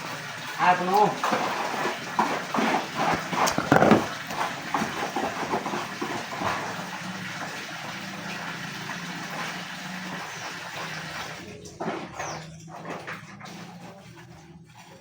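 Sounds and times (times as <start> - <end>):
water splashing into container: 1.0 - 8.3.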